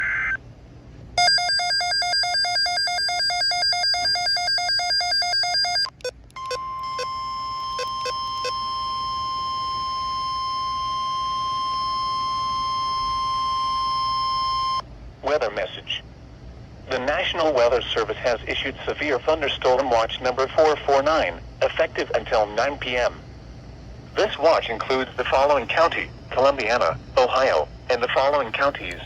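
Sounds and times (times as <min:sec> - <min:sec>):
steady alarm tone: 0:01.2 - 0:14.9, 0:19.9 - 0:29.0
rapidly pulsing electronic beeping: 0:02.1 - 0:14.8.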